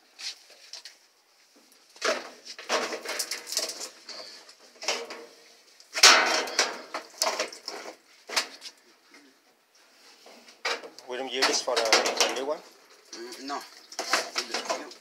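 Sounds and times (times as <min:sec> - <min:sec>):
hard parts clattering and knocking: 0:02.0 - 0:05.4, 0:06.0 - 0:08.5, 0:10.6 - 0:15.0.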